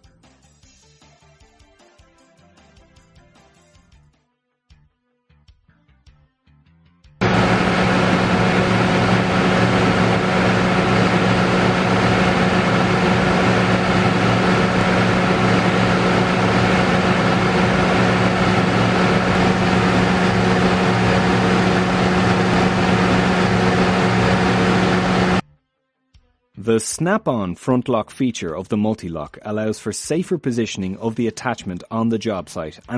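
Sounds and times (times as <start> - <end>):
excavator diesel engine running: 7.2 - 25.4.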